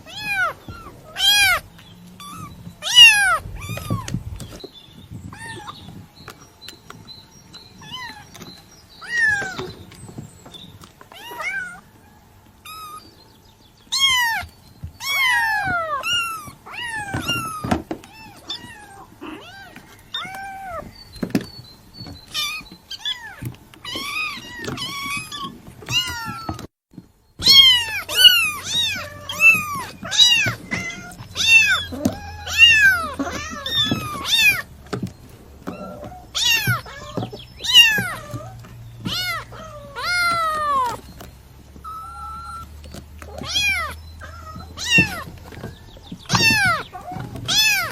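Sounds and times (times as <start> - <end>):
kitten meowing: 0.0 - 1.6, 2.2 - 4.2, 9.0 - 9.7, 13.9 - 20.9, 27.4 - 34.7, 35.7 - 41.0, 43.3 - 45.7, 46.3 - 47.9.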